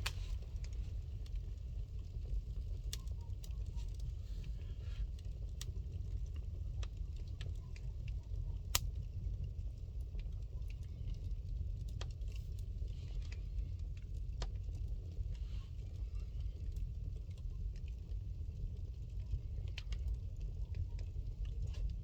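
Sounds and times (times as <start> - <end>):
fire crackling and popping: 0.0 - 22.0
low fire rumble: 0.0 - 22.0.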